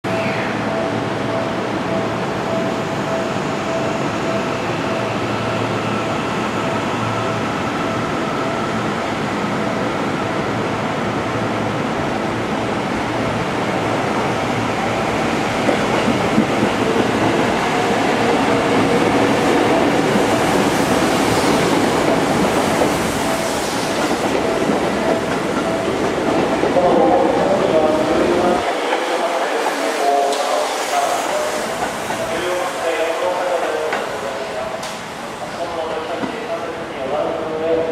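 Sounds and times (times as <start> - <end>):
electric train rumbling on rails: 0.0 - 37.9
train brakes hissing and squealing: 29.4 - 35.7.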